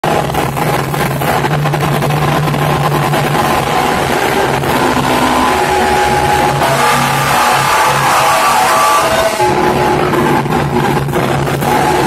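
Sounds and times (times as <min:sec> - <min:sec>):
harsh distorted noise music: 0:00.0 - 0:12.0.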